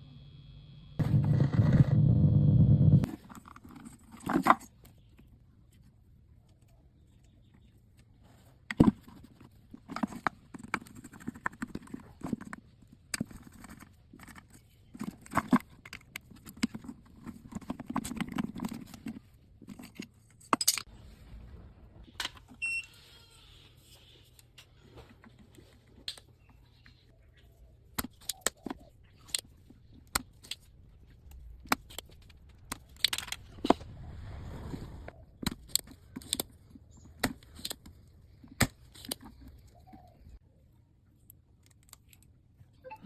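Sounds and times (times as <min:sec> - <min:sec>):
loud buzzing tone: 0:00.0 - 0:03.0.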